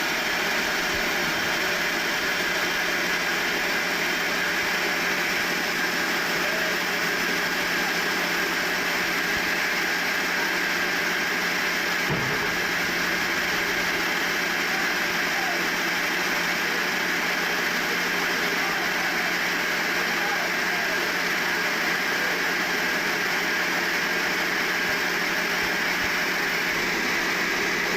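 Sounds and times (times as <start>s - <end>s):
sawmill machinery running: 0.0s - 27.9s
low thump: 12.1s - 13.8s.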